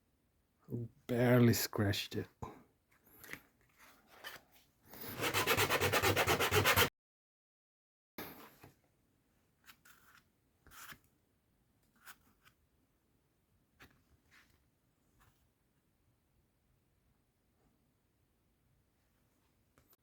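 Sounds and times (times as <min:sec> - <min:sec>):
sandpaper rubbing on plastic: 0:05.1 - 0:06.9.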